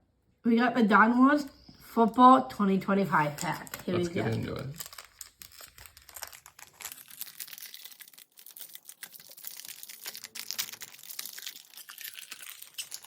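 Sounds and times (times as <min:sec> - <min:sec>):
foil wrapper crinkling and tearing: 0:03.1 - 0:13.0.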